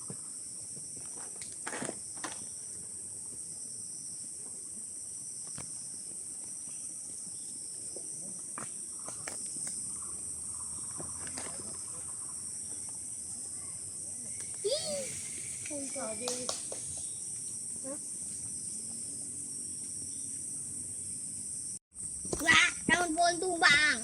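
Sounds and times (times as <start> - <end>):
high-pitched insects shrilling: 8.9 - 24.0.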